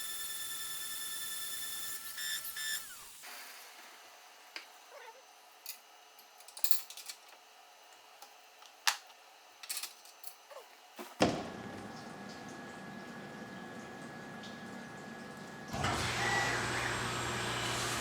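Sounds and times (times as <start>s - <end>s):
milling machine cutting with coolant: 11.5s - 18.0s.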